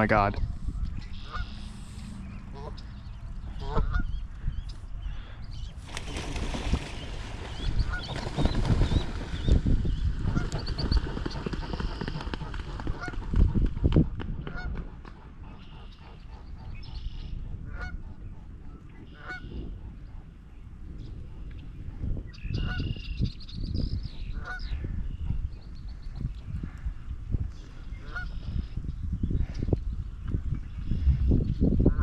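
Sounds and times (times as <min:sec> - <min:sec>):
geese honking: 0:01.1 - 0:04.2, 0:11.8 - 0:13.1, 0:14.5 - 0:14.7, 0:17.7 - 0:18.0, 0:19.1 - 0:19.6, 0:28.0 - 0:28.4.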